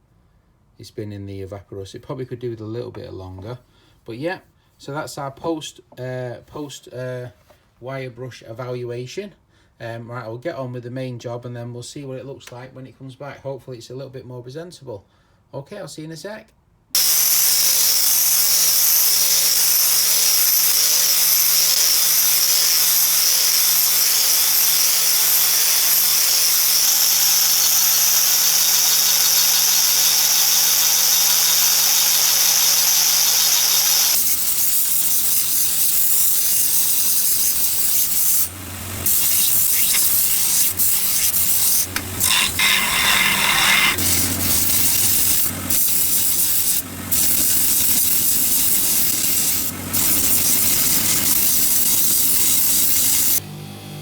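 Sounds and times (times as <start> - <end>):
power tool wheel grinding steel: 17.0 - 53.4
motor hum: 37.5 - 54.0.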